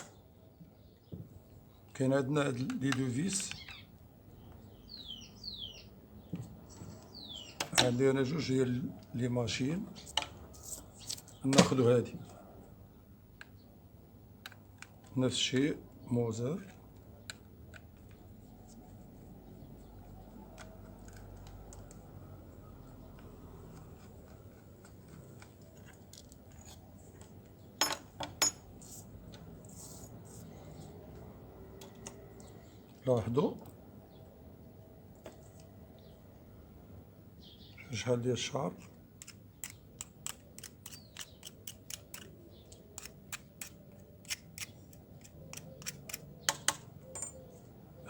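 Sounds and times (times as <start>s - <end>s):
sharp metallic clinks: 47.1s - 47.5s.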